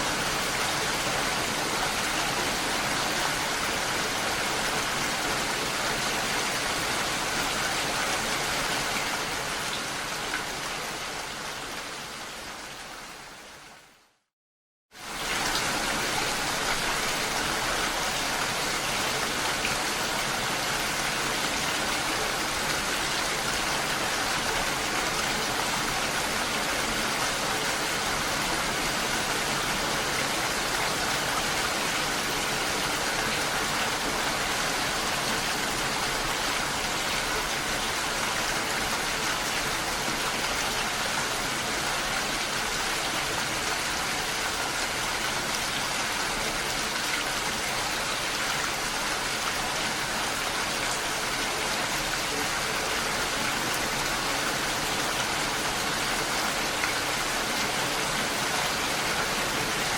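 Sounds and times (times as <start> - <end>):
steady rain hiss: 15.0 - 59.9.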